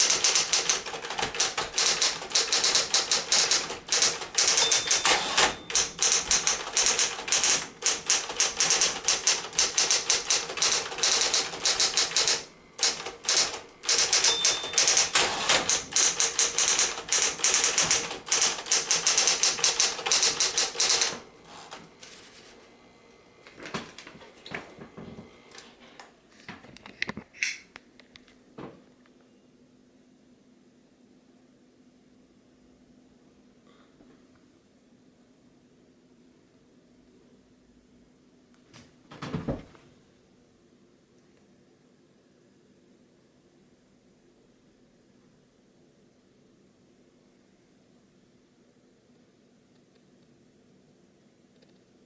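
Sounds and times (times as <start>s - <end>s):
electric typewriter typing: 0.0s - 22.2s.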